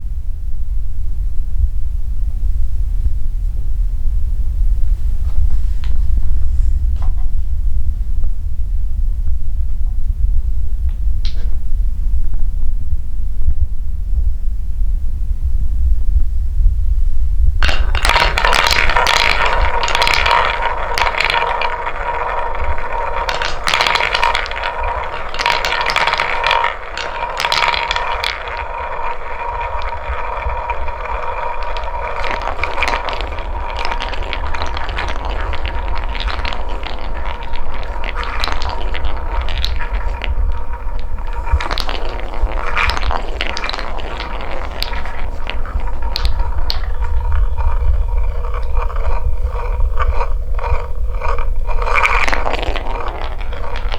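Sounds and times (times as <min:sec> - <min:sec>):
balls rattling down wooden track: 0:17.6 - 0:53.9.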